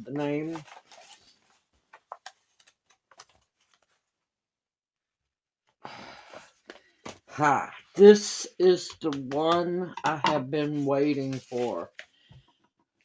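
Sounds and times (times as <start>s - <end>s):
paper rustle: 0.0s - 4.0s, 10.6s - 12.5s.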